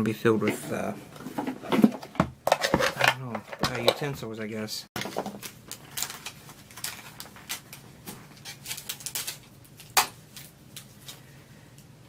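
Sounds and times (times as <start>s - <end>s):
plastic parts clicking and knocking: 1.3s - 4.2s.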